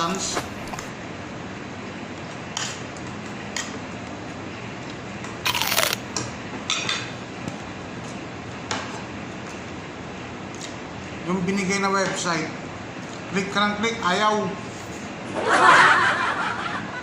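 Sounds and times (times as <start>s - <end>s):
steady background noise: 0.0s - 17.0s
loud scrape or crunch: 5.5s - 6.0s.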